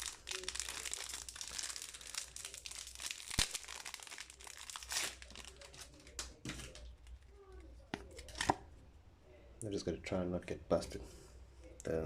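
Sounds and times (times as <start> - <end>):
plastic packaging crinkling: 0.0 - 6.9.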